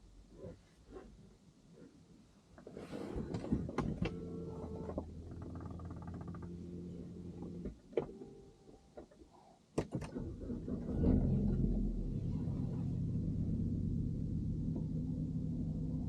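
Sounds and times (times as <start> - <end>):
low rumble: 10.8 - 16.0
steady low hum: 11.4 - 16.0.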